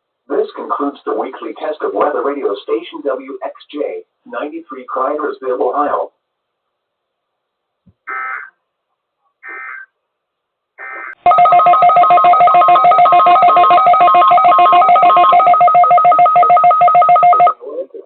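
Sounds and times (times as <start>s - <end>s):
digital data tone bursts: 10.8s - 17.6s
pulsing electronic alarm beeps: 10.8s - 17.6s.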